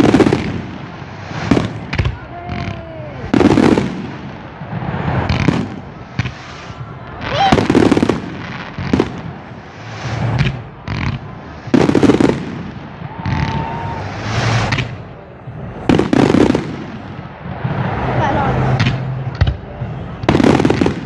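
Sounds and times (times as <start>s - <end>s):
fireworks bursting with loud bangs: 0.0s - 21.0s.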